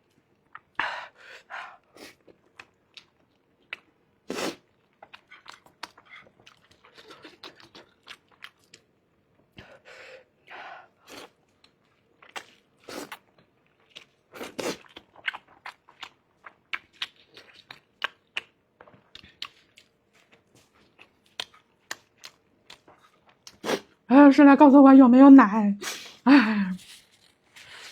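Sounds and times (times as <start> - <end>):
chewing and wet mouth smacks: 2.2 - 9.0, 11.1 - 24.0.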